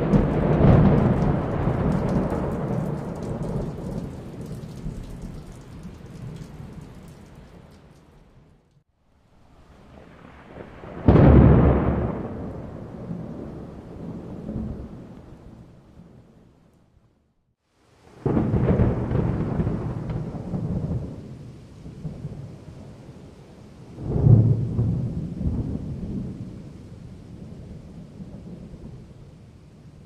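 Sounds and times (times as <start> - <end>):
thunderclap rumbling: 0.0 - 7.8, 9.4 - 16.6, 18.2 - 23.0, 24.0 - 29.4
rain hissing: 0.0 - 8.6.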